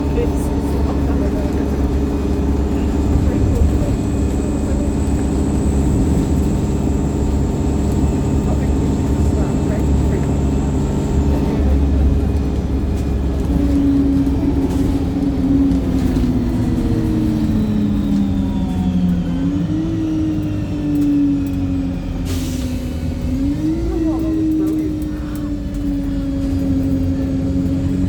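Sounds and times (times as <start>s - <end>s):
bus engine droning with whine: 0.0s - 28.0s.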